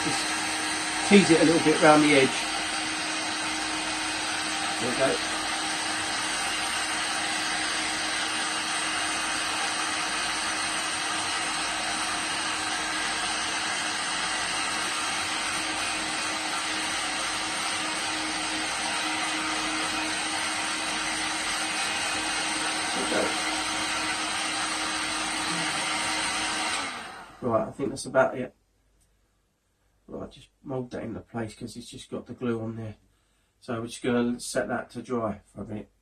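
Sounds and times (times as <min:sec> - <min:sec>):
heat gun blowing air: 0:00.0 - 0:27.5.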